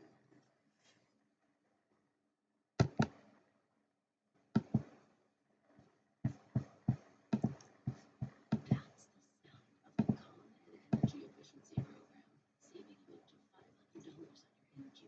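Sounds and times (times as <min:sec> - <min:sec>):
sharp taps or clicks: 0:02.8 - 0:03.2, 0:04.6 - 0:05.0, 0:06.3 - 0:08.9, 0:10.0 - 0:10.3.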